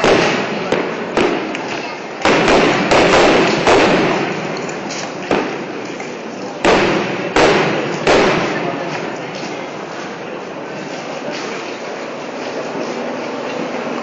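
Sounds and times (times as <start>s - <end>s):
firework shells booming: 0.0s - 9.2s.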